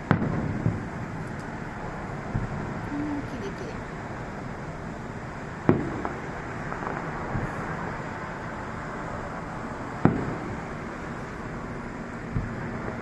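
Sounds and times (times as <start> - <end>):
faint firework pops: 0.0 - 1.5, 2.3 - 2.6, 5.7 - 7.8, 10.0 - 10.6, 12.3 - 13.0
fireworks bursting with bangs: 0.0 - 13.0
steady background noise: 0.0 - 13.0.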